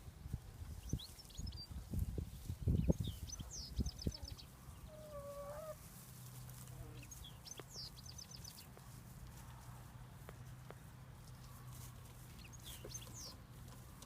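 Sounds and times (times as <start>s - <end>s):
chicken call: 4.9s - 5.8s.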